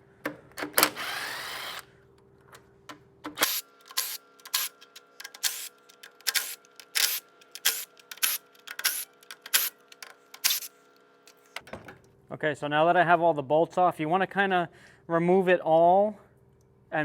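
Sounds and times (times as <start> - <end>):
power tool whirring: 0.6 - 2.0, 3.3 - 11.6
power tool sharp bursts: 0.7 - 1.9, 3.4 - 10.9.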